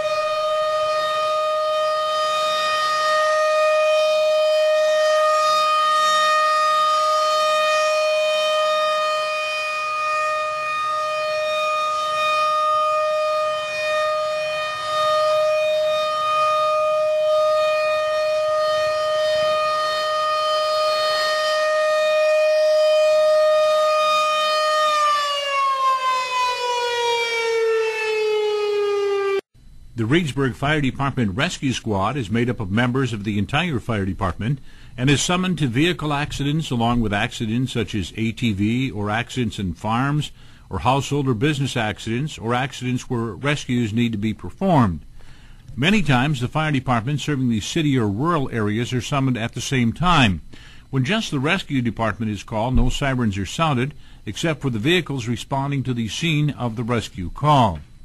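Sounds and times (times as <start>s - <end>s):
mechanical fire siren: 0.0s - 29.8s, 44.7s - 58.0s.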